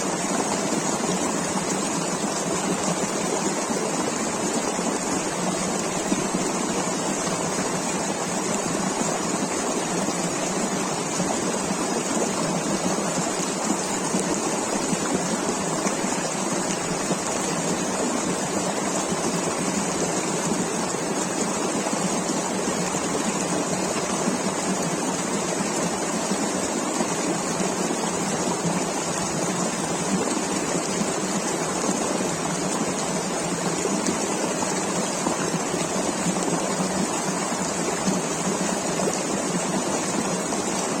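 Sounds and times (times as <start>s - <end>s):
river water rushing over stones: 0.0s - 41.0s.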